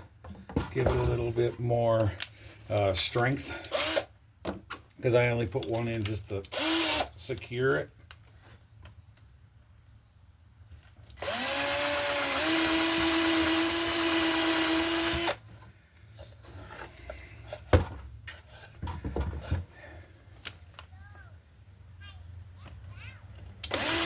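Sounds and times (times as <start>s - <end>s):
power drill driving screw: 3.6s - 4.1s, 6.4s - 7.1s, 11.2s - 15.4s, 23.6s - 24.0s.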